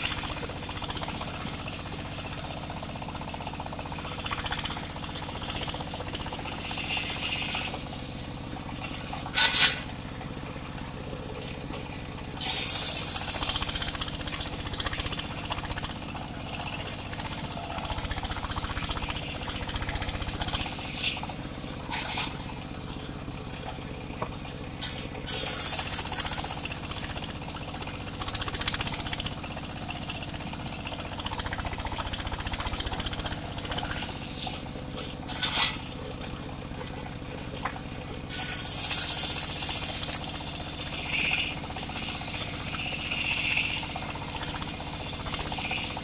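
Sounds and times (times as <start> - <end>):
circular saw engine running: 0.0 - 8.6, 12.4 - 22.0, 24.8 - 35.4, 38.2 - 46.0
saw blade cutting wood: 35.3 - 35.8, 41.0 - 43.9.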